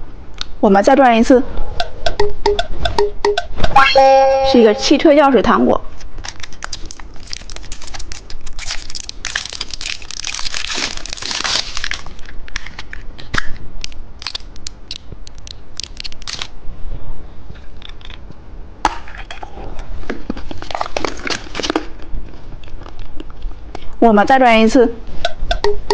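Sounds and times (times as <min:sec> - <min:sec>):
candy wrapper crinkling: 0:06.0 - 0:16.5.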